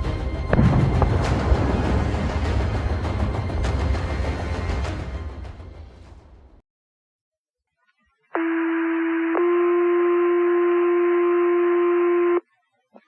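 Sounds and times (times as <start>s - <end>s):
two-tone radio page tone: 8.4s - 12.4s.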